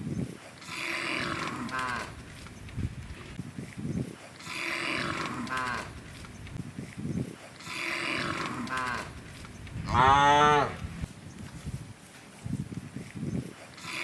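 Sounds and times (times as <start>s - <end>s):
cattle mooing: 0.7s - 2.2s, 4.4s - 5.9s, 7.7s - 9.2s, 9.8s - 11.1s.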